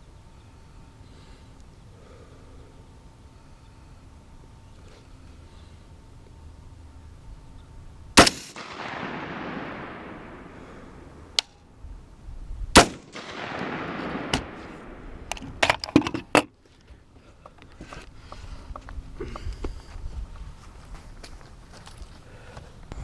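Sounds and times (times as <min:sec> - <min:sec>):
rifle shots echoing: 0:08.2 - 0:11.5, 0:12.8 - 0:15.8
sharp clicks and knocks: 0:14.0 - 0:16.5.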